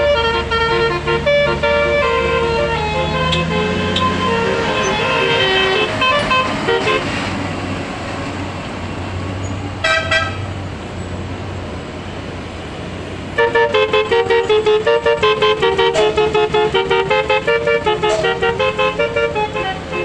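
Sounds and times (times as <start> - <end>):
musical air horn tune: 0.0 - 7.4, 13.4 - 20.0
bus engine humming: 0.0 - 20.0.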